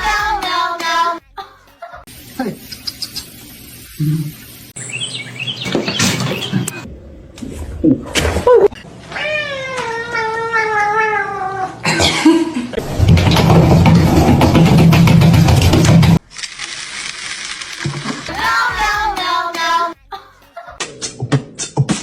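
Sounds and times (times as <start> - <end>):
cat yowling: 9.1 - 11.8.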